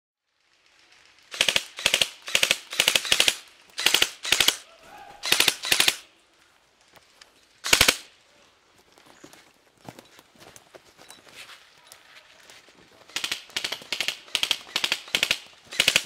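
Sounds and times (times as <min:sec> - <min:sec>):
airsoft gun firing bursts: 0:01.3 - 0:06.0, 0:07.6 - 0:08.1, 0:13.0 - 0:16.0.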